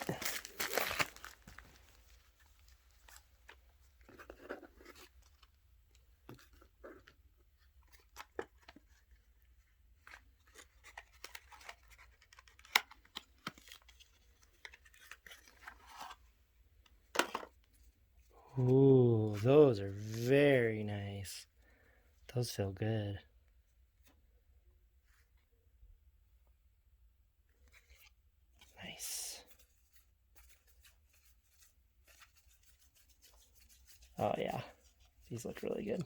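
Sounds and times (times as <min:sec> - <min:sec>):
wrapping tearing and crinkling: 0:00.0 - 0:03.2.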